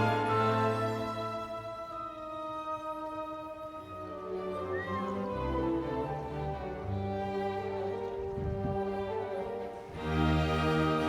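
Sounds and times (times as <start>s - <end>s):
slow orchestral string music: 0.0s - 11.0s.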